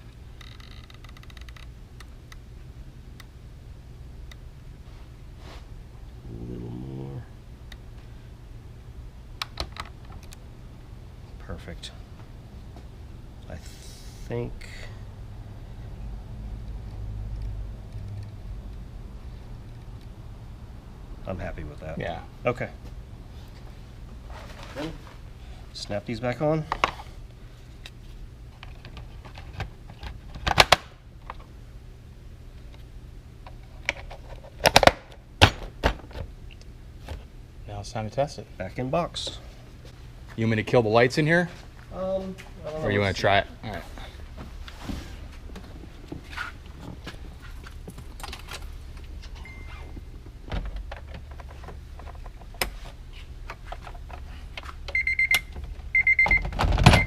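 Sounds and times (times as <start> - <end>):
car warning chime beeping: 54.9 - 56.4.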